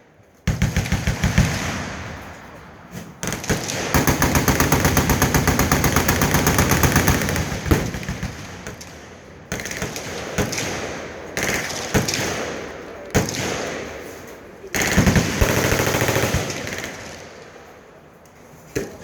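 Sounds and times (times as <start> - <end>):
machine gun bursts: 3.2 - 8.9, 14.7 - 17.2
single gunshots: 7.2 - 14.2.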